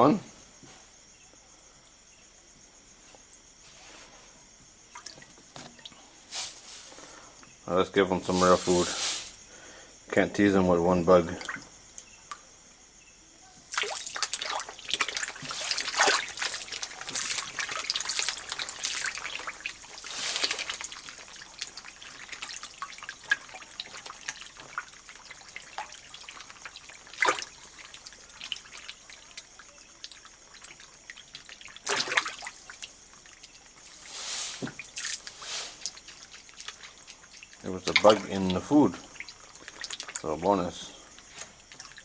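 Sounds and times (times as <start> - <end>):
fish splashing at surface: 4.9 - 7.2, 8.2 - 9.6, 13.6 - 42.0
pellets hitting water: 6.3 - 7.1, 7.9 - 9.4, 13.6 - 42.0.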